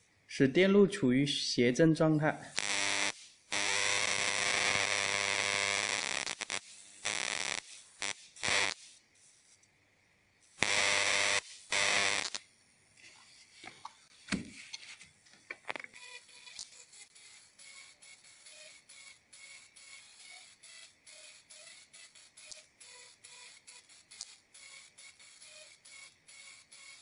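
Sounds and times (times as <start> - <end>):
plasma arc buzzing and hissing: 2.5 - 9.6, 10.4 - 12.5, 15.7 - 27.0
faint arc crackles: 10.6 - 14.1.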